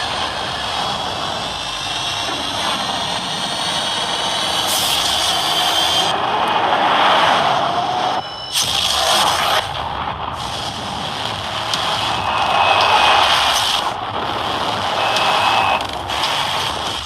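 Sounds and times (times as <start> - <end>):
rushing air and tyre noise: 0.0 - 17.0
electric motor whine: 11.4 - 17.0.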